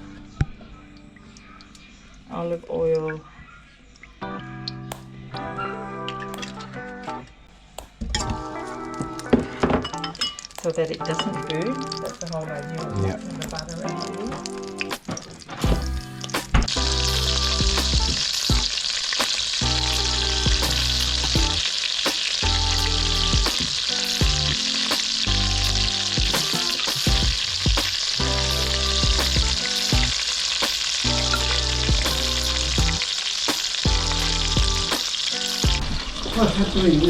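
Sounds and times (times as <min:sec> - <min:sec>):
background music: 0:00.0 - 0:37.0
batter sizzling in a pan: 0:08.4 - 0:37.0.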